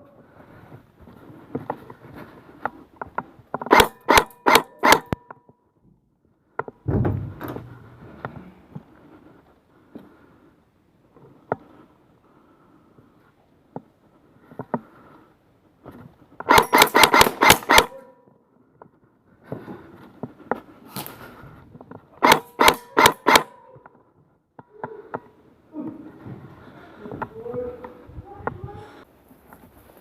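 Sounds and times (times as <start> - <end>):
airsoft gun rapid shots: 3.7 - 5.1, 16.5 - 18.0, 22.2 - 23.5.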